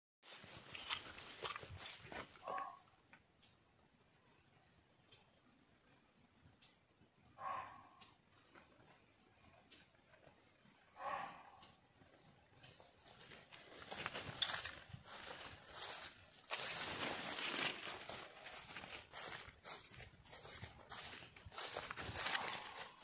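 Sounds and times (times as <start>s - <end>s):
cricket trilling: 0.3s - 23.0s
deer barking: 2.4s - 2.8s, 7.4s - 8.0s, 11.0s - 11.7s.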